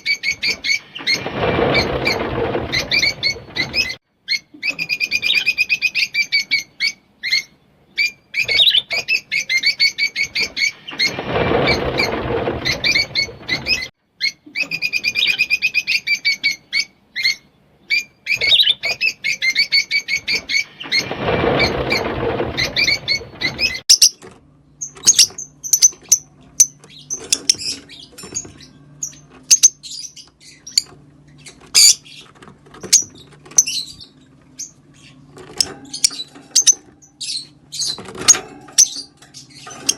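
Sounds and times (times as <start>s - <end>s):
lovebirds chirping: 0.0s - 39.9s.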